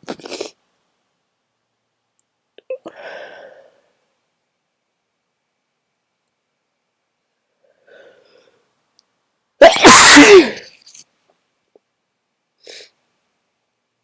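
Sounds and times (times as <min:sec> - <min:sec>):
loud sneeze: 0:09.6 - 0:10.8.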